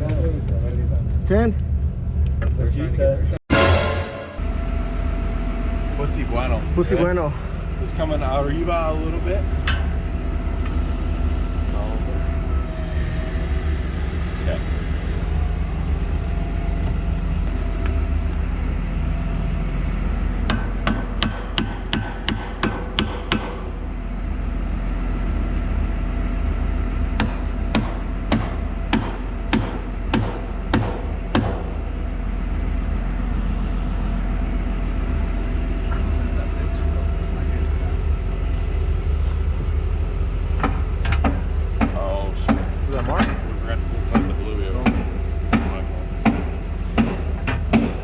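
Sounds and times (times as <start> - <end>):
low engine hum: 0.0 - 3.4, 4.4 - 48.0
hammer ringing on metal: 20.5 - 23.6, 27.2 - 31.8.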